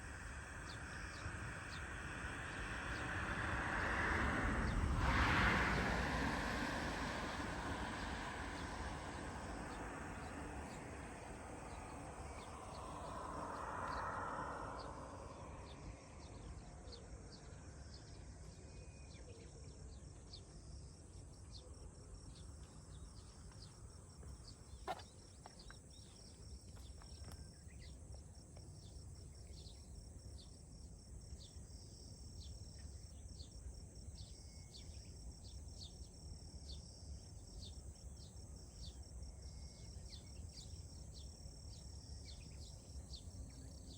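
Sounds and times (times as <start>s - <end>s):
high insect drone: 0.0s - 19.0s
insect and bird chirps: 0.0s - 43.9s.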